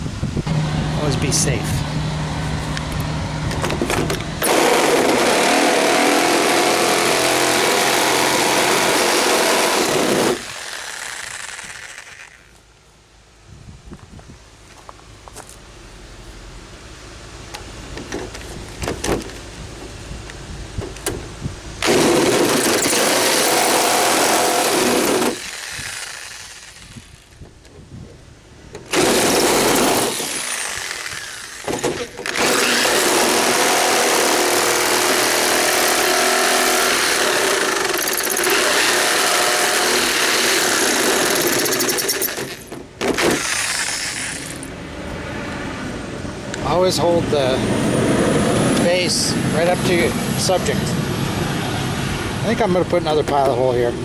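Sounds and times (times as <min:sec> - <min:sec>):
electric jigsaw cutting: 0:03.7 - 0:12.5, 0:21.8 - 0:27.4, 0:28.9 - 0:44.7.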